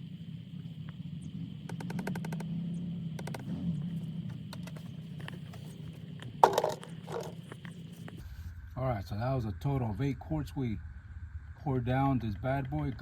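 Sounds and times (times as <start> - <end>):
sharp plastic clicks: 1.6 - 2.6, 3.2 - 3.5, 4.3 - 5.4
oil glugging from a bottle: 6.4 - 7.7.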